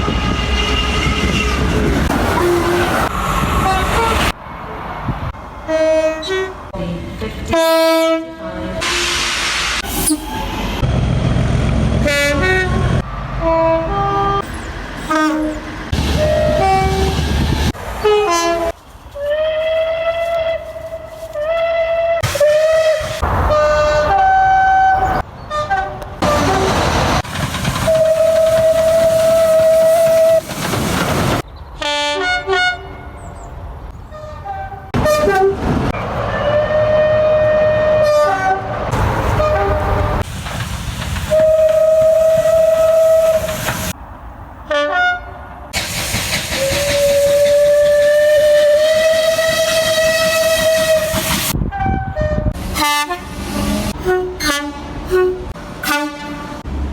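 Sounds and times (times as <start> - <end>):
train horn blasts: 0.0 - 1.7, 5.7 - 6.6, 7.5 - 9.2, 12.0 - 14.5, 15.1 - 17.2, 18.0 - 26.8, 31.8 - 33.2, 34.1 - 35.7, 36.3 - 40.2, 41.3 - 43.6, 44.7 - 45.4, 46.6 - 56.7
rumble of passing trains: 0.0 - 56.9.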